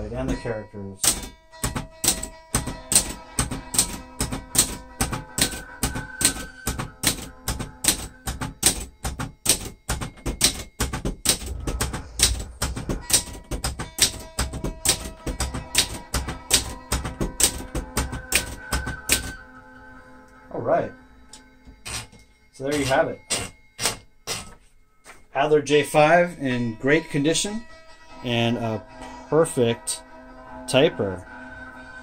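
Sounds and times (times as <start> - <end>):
manual typewriter typing: 1.0 - 19.4, 21.8 - 24.5.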